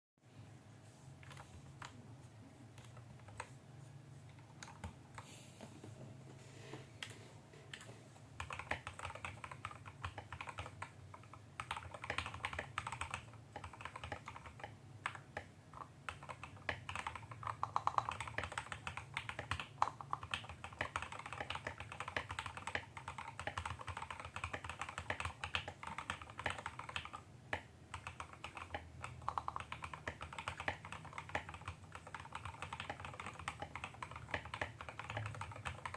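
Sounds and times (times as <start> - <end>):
low background hum: 0.2 - 35.9
mechanical keyboard typing: 2.7 - 3.6, 4.3 - 5.0, 7.0 - 35.9.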